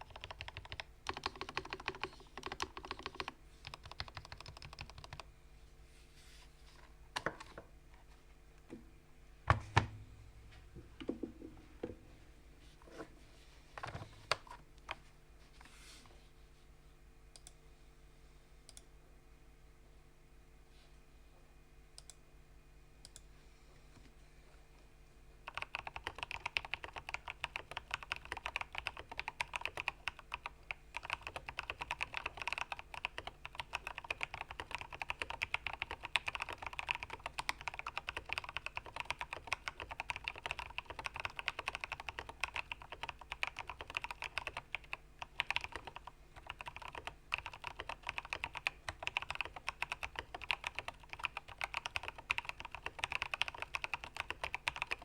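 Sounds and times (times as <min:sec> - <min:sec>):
fast mechanical keyboard typing: 0:00.0 - 0:05.3, 0:25.4 - 0:55.0.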